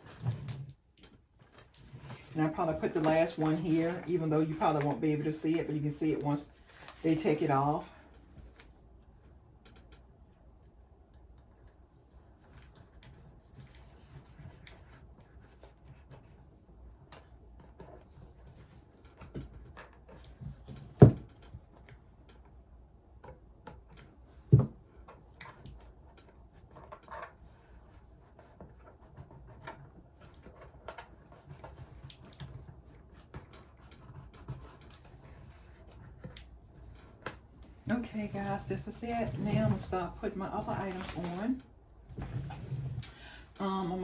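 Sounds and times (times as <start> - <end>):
small clicks and rustles: 23.2 - 39.9.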